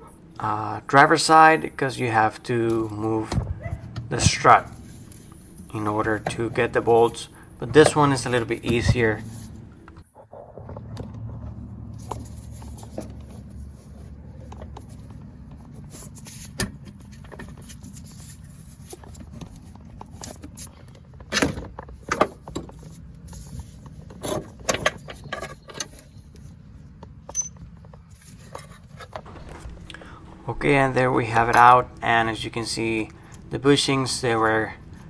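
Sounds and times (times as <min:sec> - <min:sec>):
steady low hum: 0:00.0 - 0:24.7, 0:26.3 - 0:35.0
wrenches clinking on metal: 0:27.3 - 0:27.6.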